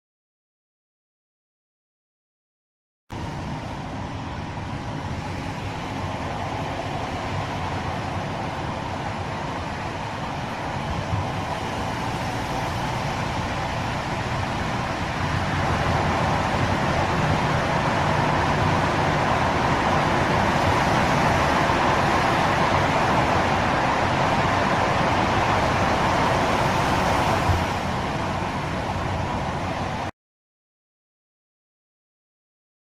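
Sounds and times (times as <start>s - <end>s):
car road and engine noise: 3.1s - 30.1s.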